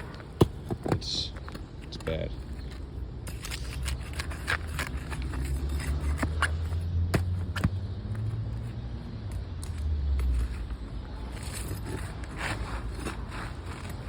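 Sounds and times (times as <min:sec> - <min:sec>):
scraping: 0:00.0 - 0:08.8, 0:09.6 - 0:14.0.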